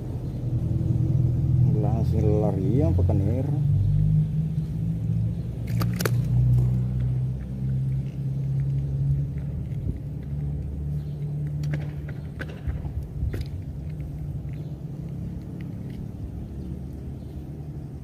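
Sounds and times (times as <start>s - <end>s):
low engine-like hum: 0.0s - 18.0s
sharp clicks: 5.6s - 17.1s.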